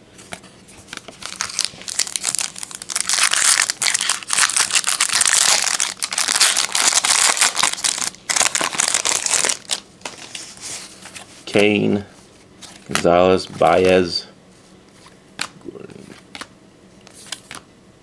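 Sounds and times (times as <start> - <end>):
wrapper crinkling and tearing: 1.0 - 10.3.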